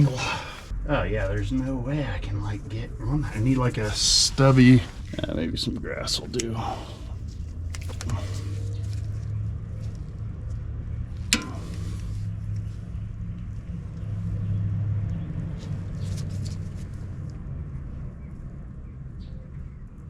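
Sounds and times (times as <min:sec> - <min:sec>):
low rumble: 0:00.0 - 0:20.0
hand tools clicking on metal: 0:11.3 - 0:12.0.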